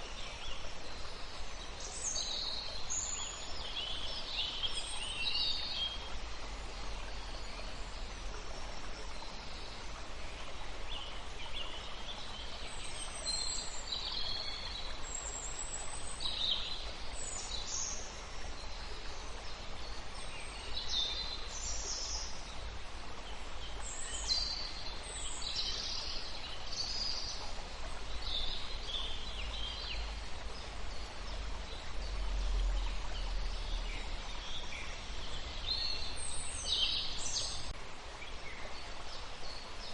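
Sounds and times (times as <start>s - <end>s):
background hiss: 0.0s - 39.9s.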